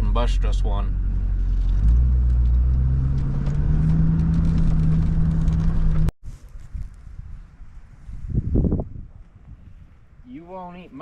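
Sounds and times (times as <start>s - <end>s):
vehicle engine revving: 0.0s - 6.1s
quiet outdoor background: 0.0s - 11.0s.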